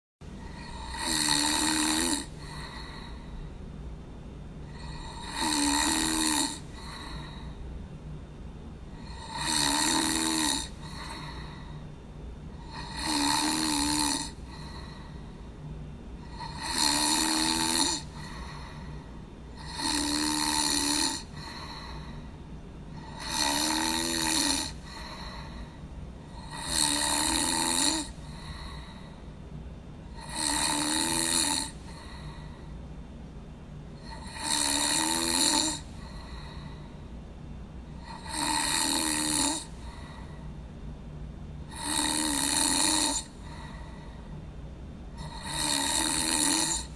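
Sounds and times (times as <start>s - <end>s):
low steady hum: 0.2s - 46.9s
person snoring: 0.4s - 3.5s, 4.7s - 7.6s, 9.0s - 11.8s, 12.5s - 15.3s, 16.2s - 22.3s, 22.9s - 29.2s, 30.1s - 32.7s, 34.0s - 36.9s, 38.0s - 40.4s, 41.7s - 44.2s, 45.2s - 46.9s.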